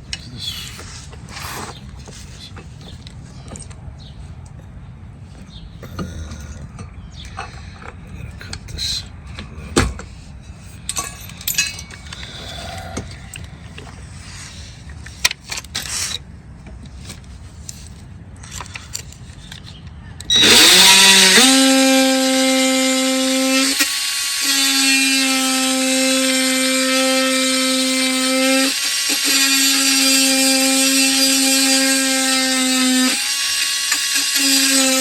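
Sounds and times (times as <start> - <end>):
power tool whining: 20.3 - 35.0.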